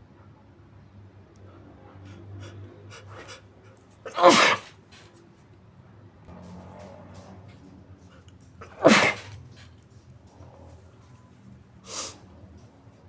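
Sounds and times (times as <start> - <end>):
person sneezing: 4.1 - 4.7, 8.6 - 9.4.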